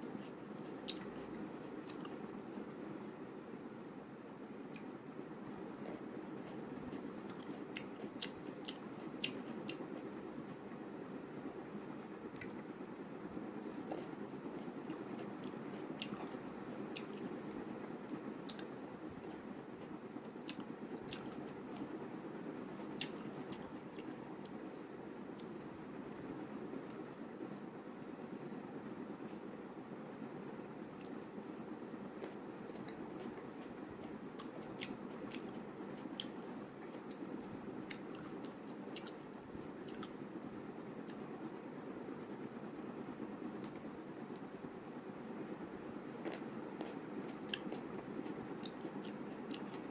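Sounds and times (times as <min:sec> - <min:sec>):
chewing with clicks and smacks: 0:00.0 - 0:02.3, 0:04.7 - 0:04.9, 0:05.8 - 0:10.6, 0:12.3 - 0:12.7, 0:13.7 - 0:21.9, 0:22.8 - 0:25.5, 0:32.2 - 0:41.3, 0:46.2 - 0:49.9
low background hum: 0:00.0 - 0:49.9.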